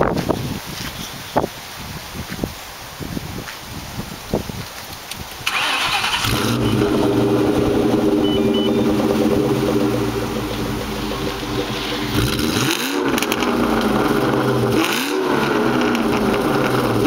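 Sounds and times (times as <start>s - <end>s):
wind buffeting microphone: 0.0s - 14.8s
car starter cranking: 5.4s - 12.6s
car engine idling: 5.5s - 17.0s.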